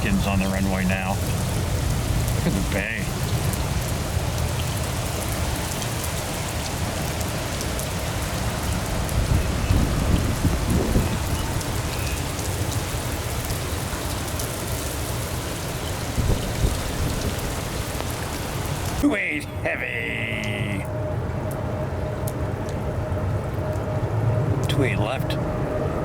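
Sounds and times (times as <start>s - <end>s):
wind rumble on microphone: 0.0s - 19.0s
heavy rain pouring: 0.0s - 26.0s.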